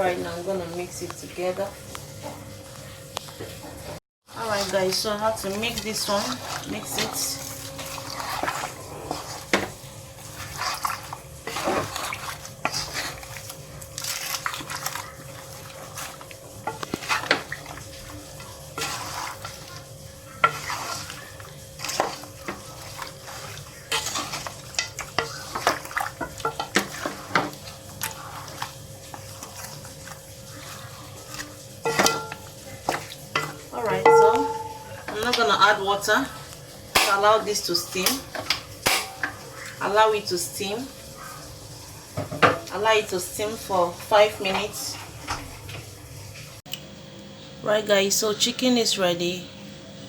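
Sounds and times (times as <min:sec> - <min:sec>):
utensil scraping pot: 0:03.8 - 0:40.0.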